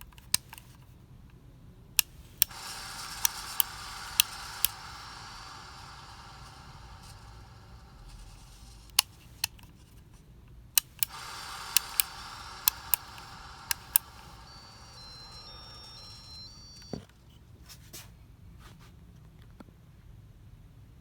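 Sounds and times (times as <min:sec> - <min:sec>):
sharp mechanical clicks: 0:02.0 - 0:09.7, 0:10.8 - 0:17.0
high stepped beeps: 0:11.0 - 0:17.1.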